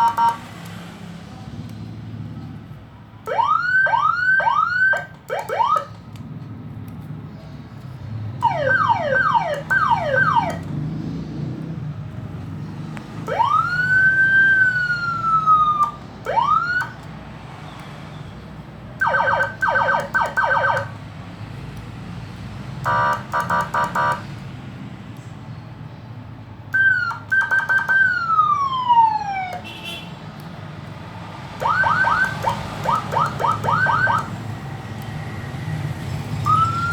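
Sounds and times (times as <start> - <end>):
electronic siren whoops and wails: 0.0 - 0.4, 3.3 - 5.9, 8.4 - 10.7, 13.3 - 17.0, 19.0 - 21.0, 26.8 - 29.6, 31.6 - 34.4, 36.4 - 36.9.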